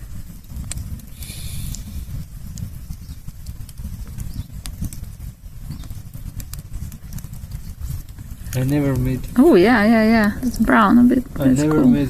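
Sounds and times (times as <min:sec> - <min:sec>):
campfire crackling: 0:00.0 - 0:12.0
short hiss: 0:01.1 - 0:02.0.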